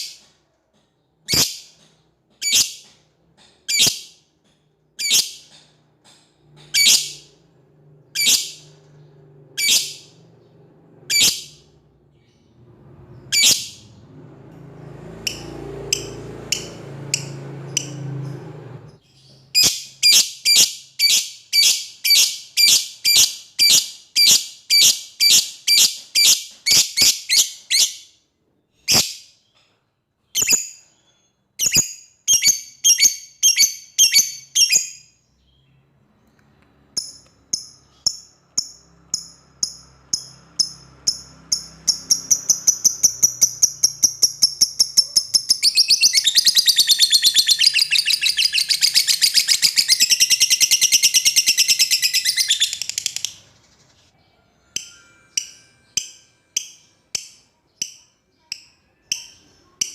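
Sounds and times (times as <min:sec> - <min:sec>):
lovebird chattering call: 0:37.0 - 0:53.4.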